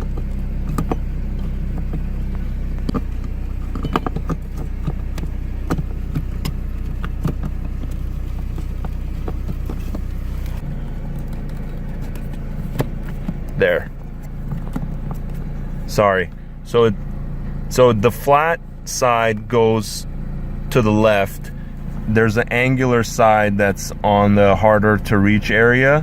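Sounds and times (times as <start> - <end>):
light clicks and knocks: 0.0 - 15.5
car engine humming: 0.0 - 26.0.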